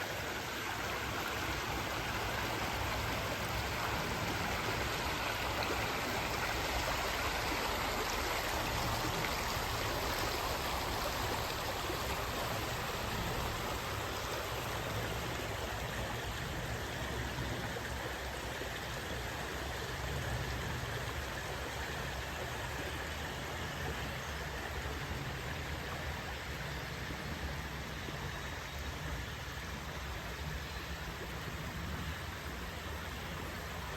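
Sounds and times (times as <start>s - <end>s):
stream water rushing: 0.0s - 33.9s.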